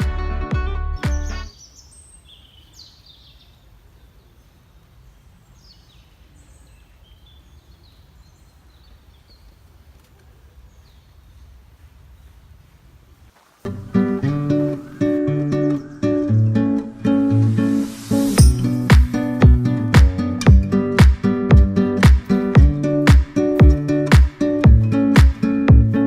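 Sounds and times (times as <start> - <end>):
birds chirping and calling: 13.7 - 19.4.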